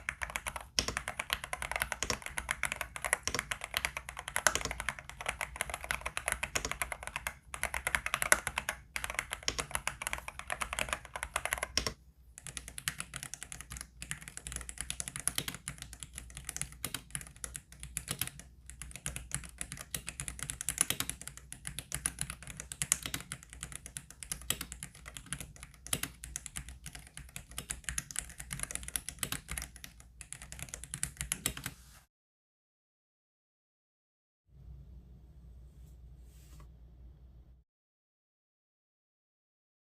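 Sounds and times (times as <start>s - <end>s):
mechanical keyboard typing: 0.0s - 31.7s.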